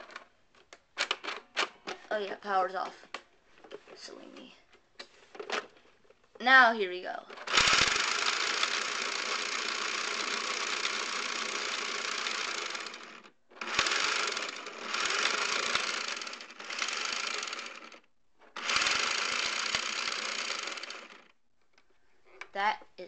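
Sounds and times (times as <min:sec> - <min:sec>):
toy blaster motor whirring: 0:07.4 - 0:18.0, 0:18.6 - 0:21.3.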